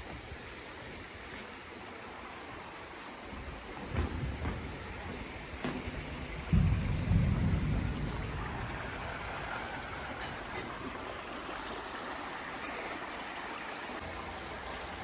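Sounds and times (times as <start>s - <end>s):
stream water rushing: 0.0s - 15.0s
low rumble: 5.9s - 10.5s.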